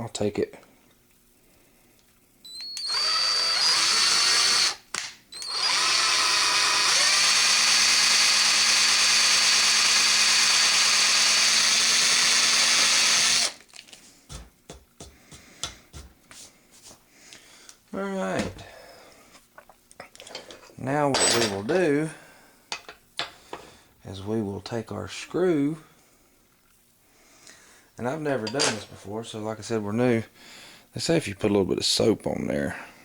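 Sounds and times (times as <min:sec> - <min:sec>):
electric drill boring into wood: 0:02.5 - 0:13.6.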